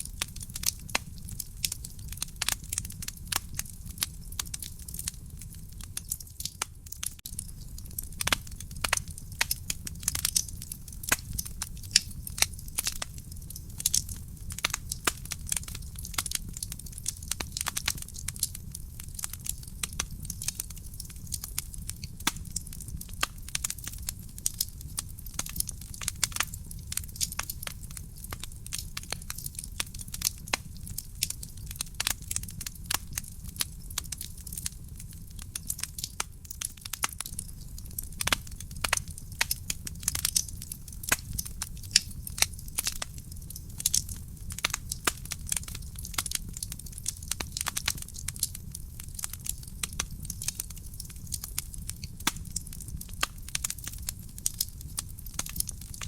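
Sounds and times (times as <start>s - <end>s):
fire crackling and popping: 0.0s - 56.0s
low rumble of flames: 0.0s - 56.0s.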